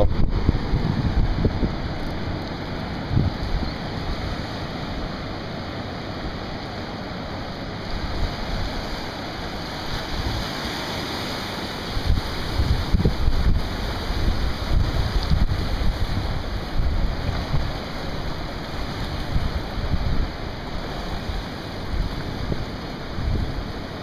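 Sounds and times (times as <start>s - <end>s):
wind buffeting microphone: 0.0s - 5.4s, 11.9s - 24.0s
ocean waves breaking: 0.0s - 24.0s.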